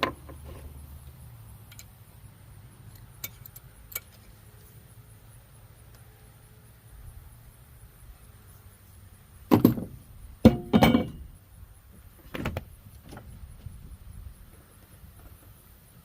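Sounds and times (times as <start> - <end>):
sharp metallic knocks and clanks: 9.5 - 11.3.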